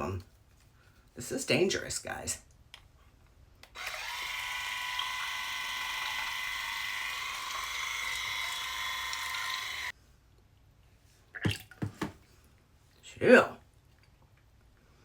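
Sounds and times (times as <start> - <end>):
water flosser motor whine: 3.7 - 9.9.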